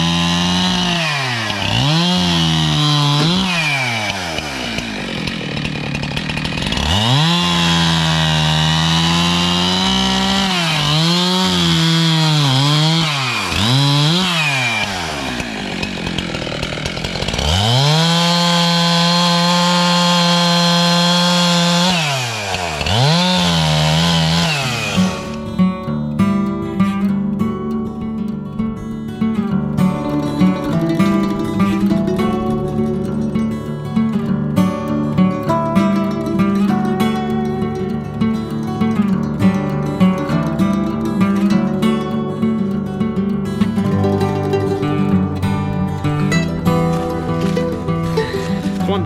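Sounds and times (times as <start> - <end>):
chainsaw revving: 0.0 - 25.8, 29.7 - 41.4, 43.5 - 49.0.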